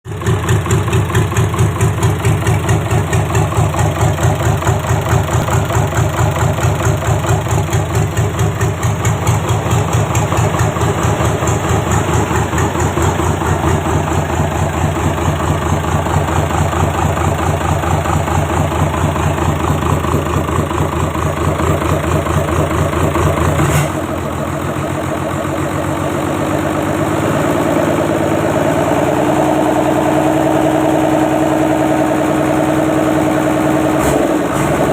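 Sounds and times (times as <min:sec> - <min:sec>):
diesel engine idling: 0:00.1 - 0:34.9
engine revving higher: 0:27.1 - 0:34.9.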